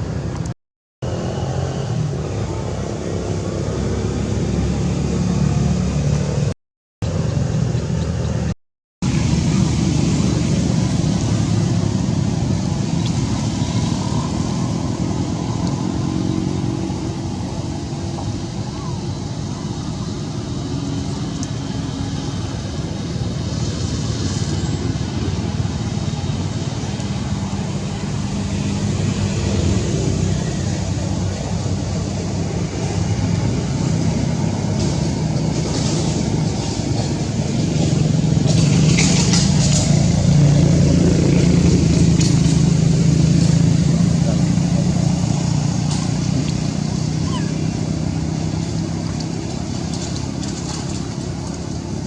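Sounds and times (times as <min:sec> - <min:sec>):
vehicle engine running: 0:01.0 - 0:52.0.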